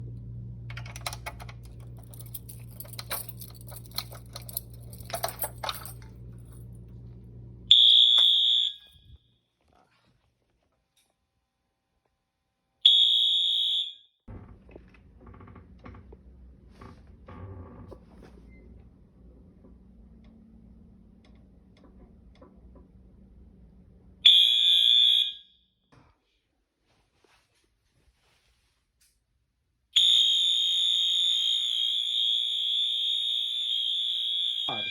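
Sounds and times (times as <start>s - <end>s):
steady low hum: 0.0s - 7.8s
clicks and rattles of handling: 0.7s - 6.4s
fire alarm high-pitched tone: 7.7s - 9.2s, 12.9s - 14.1s, 24.3s - 25.6s, 30.0s - 34.9s.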